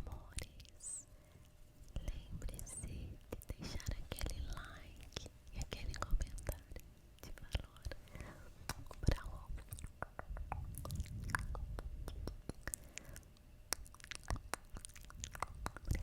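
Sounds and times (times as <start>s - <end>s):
wet mouth clicks and smacks: 8.7s - 16.0s.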